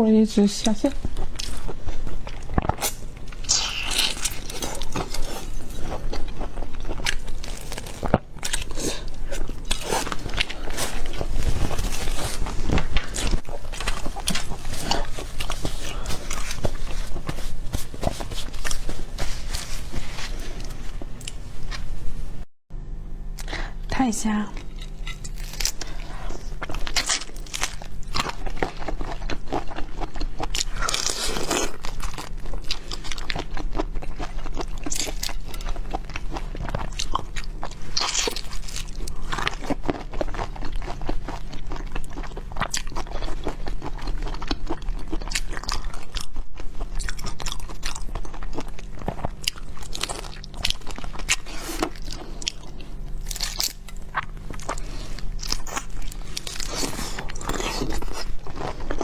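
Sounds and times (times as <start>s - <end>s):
wet chewing: 1.0s - 21.8s, 24.6s - 59.0s
crunching shrimp shells: 24.7s - 46.3s.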